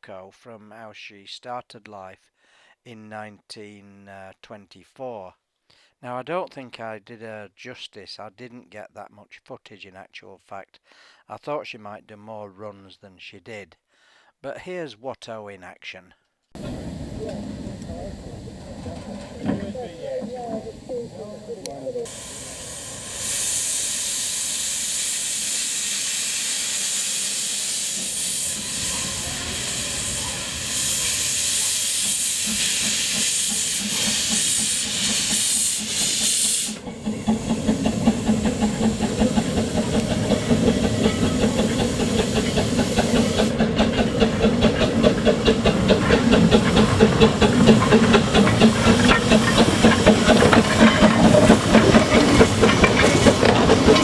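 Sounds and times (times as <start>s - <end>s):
steam hissing: 16.6s - 54.0s
steam locomotive chuffing: 16.6s - 54.0s.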